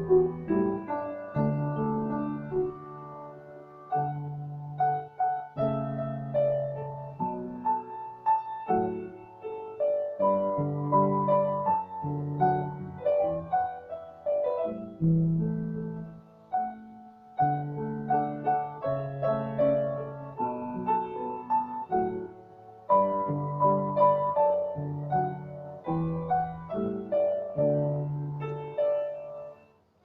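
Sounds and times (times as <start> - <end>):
slow piano melody: 0.0 - 30.0.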